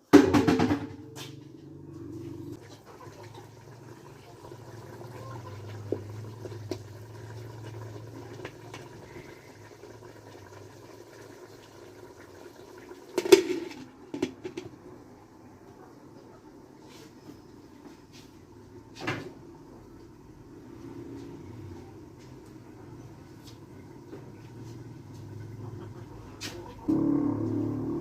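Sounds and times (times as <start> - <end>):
stew bubbling in a pot: 2.4 - 15.7.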